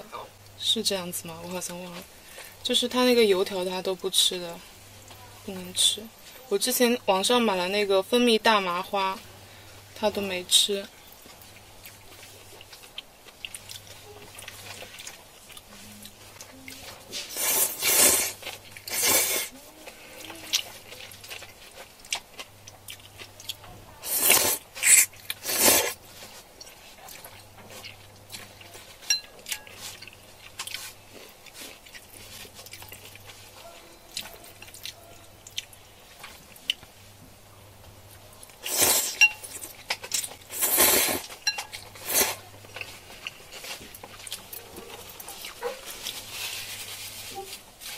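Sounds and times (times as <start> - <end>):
utensils clinking on a bowl: 28.7 - 30.0, 41.3 - 42.0.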